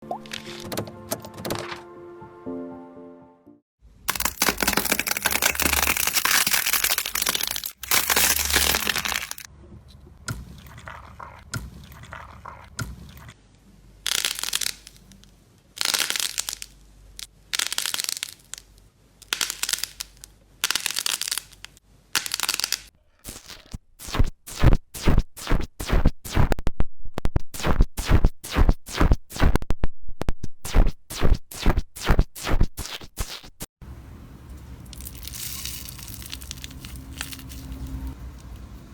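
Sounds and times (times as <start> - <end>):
slime crackling when squeezed: 4.1 - 9.5, 35.0 - 37.9.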